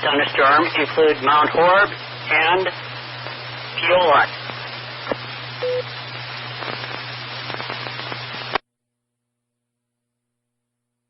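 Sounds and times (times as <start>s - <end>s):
radio static hiss: 0.0s - 8.6s.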